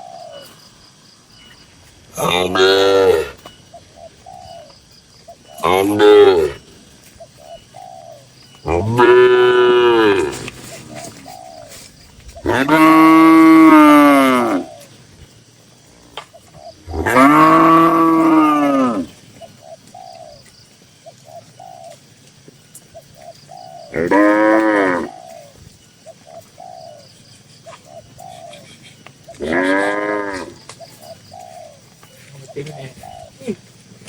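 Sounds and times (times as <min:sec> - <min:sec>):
cattle mooing: 0:08.7 - 0:10.4, 0:12.5 - 0:14.7, 0:16.9 - 0:19.1, 0:24.0 - 0:25.1, 0:29.3 - 0:30.6.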